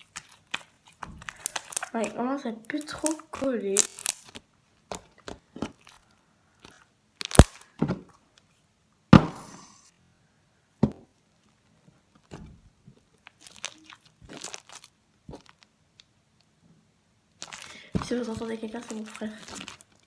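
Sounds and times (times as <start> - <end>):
slime popping and crackling: 0.0 - 6.0, 7.2 - 7.7, 13.2 - 16.1, 17.4 - 20.0.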